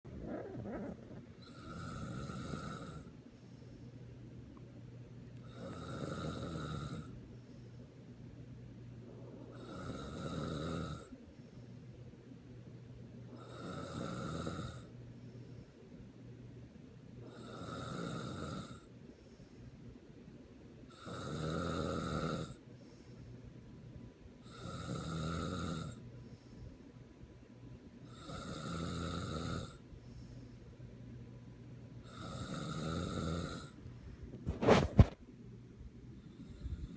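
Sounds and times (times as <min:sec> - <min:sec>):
faint steady low hum: 0:00.0 - 0:36.9
person snoring: 0:00.2 - 0:03.1, 0:05.4 - 0:07.1, 0:09.5 - 0:11.1, 0:28.1 - 0:29.8.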